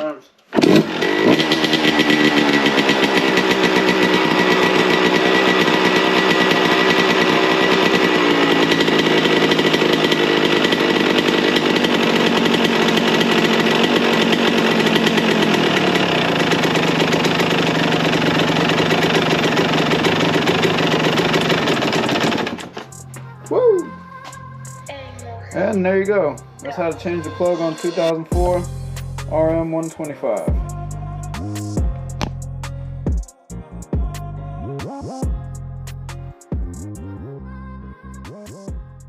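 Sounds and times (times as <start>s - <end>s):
two-stroke motorcycle engine running: 0.6s - 24.0s, 24.9s - 32.5s.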